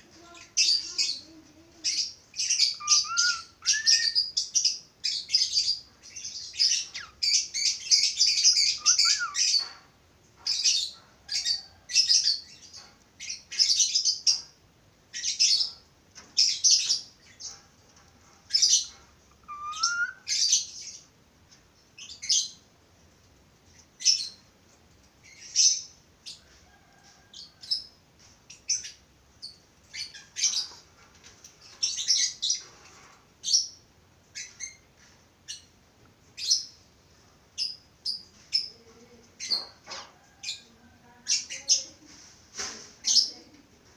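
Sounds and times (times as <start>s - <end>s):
budgerigars chirping: 2.4s - 9.8s.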